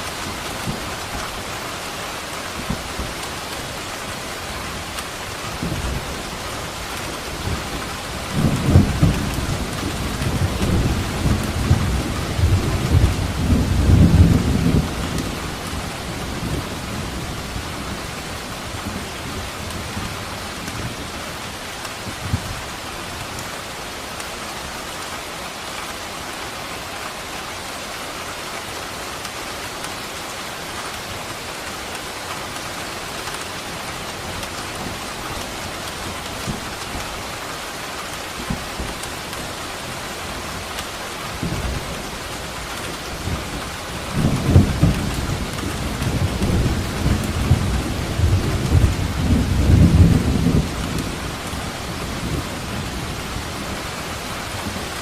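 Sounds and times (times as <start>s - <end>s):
steady rain: 0.0s - 55.0s
rolling thunder: 7.4s - 17.0s.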